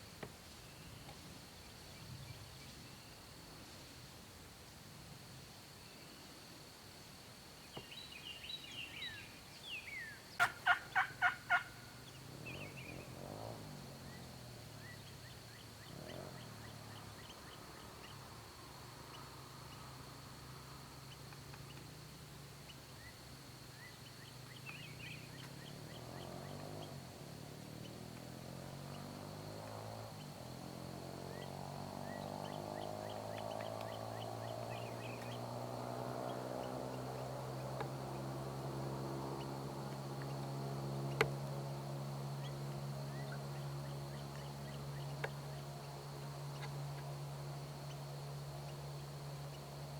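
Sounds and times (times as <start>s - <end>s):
songbird chirps: 0.0s - 3.6s, 4.6s - 49.9s
turkey calling: 10.4s - 12.0s.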